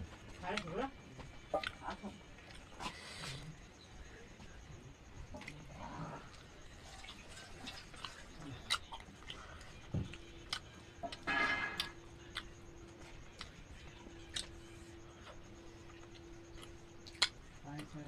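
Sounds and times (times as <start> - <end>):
clicks and taps of eating: 0.1 - 2.7, 7.0 - 14.6, 15.2 - 18.0.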